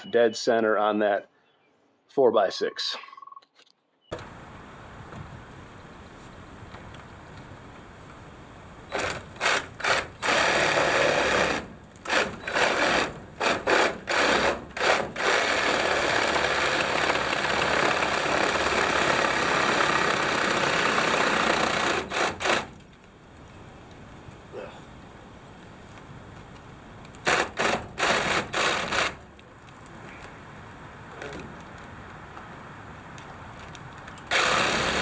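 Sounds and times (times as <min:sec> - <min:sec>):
reciprocating saw cutting wood: 0:08.9 - 0:22.8, 0:27.2 - 0:29.2, 0:34.3 - 0:35.0.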